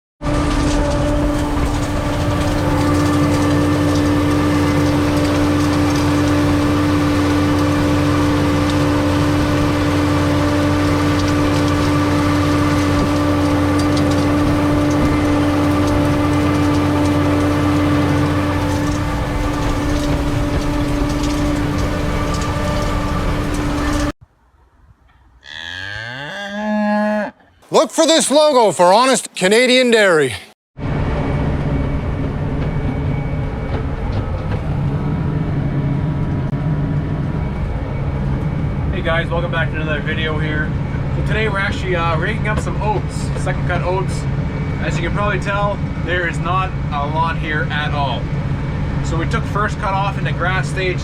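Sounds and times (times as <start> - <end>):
motor humming steadily: 1.1 - 24.1.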